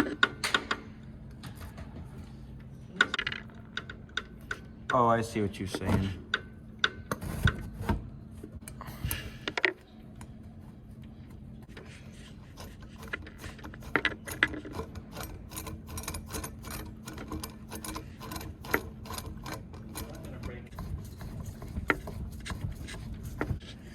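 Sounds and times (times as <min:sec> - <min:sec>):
steady low hum: 0:00.0 - 0:23.9
hand tool clicks and rattles: 0:12.7 - 0:20.7.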